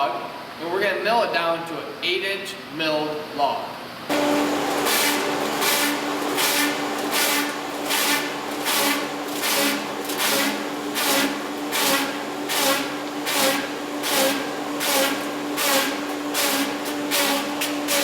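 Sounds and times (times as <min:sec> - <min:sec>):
motor hum: 0:04.1 - 0:18.0
rasping wood cutting on lathe: 0:04.1 - 0:18.0.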